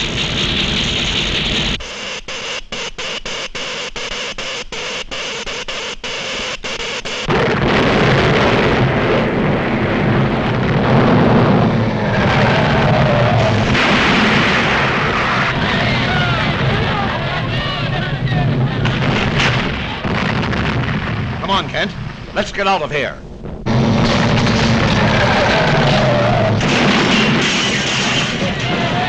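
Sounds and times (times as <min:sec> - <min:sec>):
dense rumbling din: 0:00.0 - 0:01.8, 0:07.3 - 0:29.0
pulsing hiss: 0:00.0 - 0:06.3.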